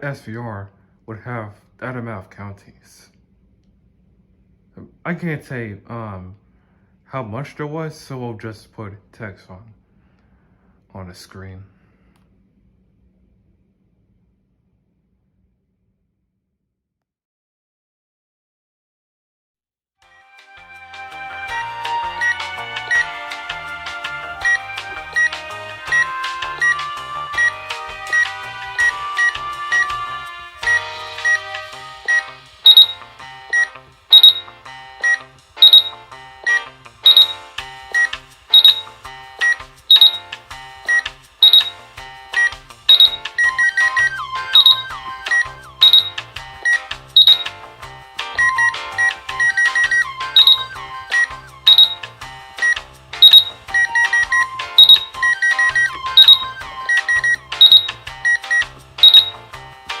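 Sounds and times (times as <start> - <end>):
background music with steady beat: 20.1 - 60.0.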